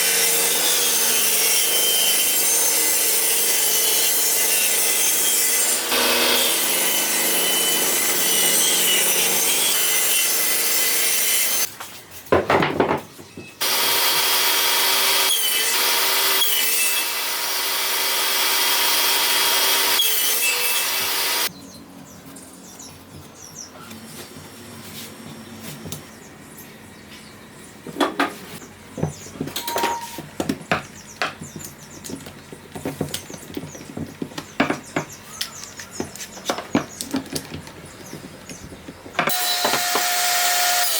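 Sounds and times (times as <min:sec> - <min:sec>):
power tool cutting wood: 0:00.0 - 0:11.7, 0:13.6 - 0:21.5, 0:39.3 - 0:40.9.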